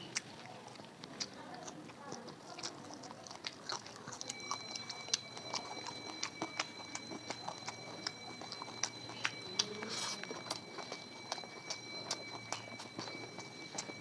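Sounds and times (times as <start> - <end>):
chewing with wet mouth clicks: 0.0 - 14.0
thin steady high tone: 4.2 - 14.0.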